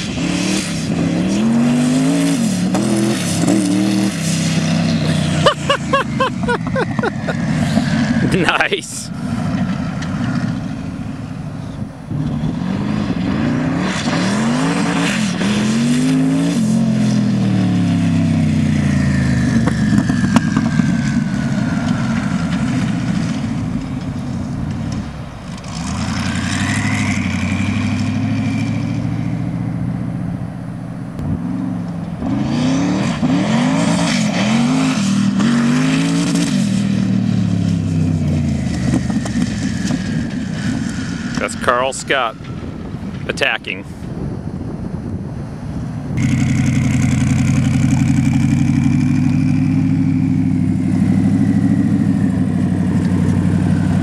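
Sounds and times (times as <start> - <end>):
engine revving hard: 0.0 - 9.5, 12.1 - 23.1, 25.6 - 29.4, 31.4 - 37.2.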